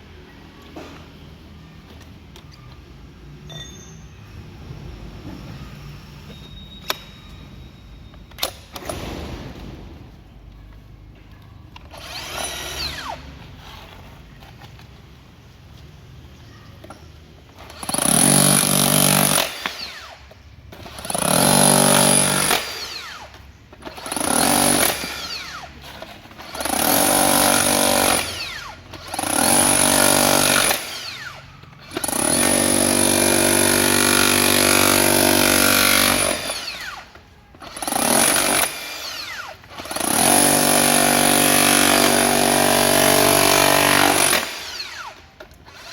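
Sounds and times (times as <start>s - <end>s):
rotary hammer running in bursts: 26.4s - 45.9s.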